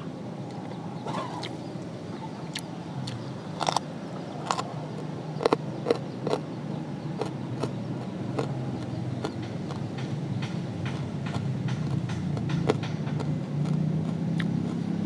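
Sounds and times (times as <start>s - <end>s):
person chewing food: 2.5s - 6.5s, 7.2s - 10.0s, 10.8s - 15.0s.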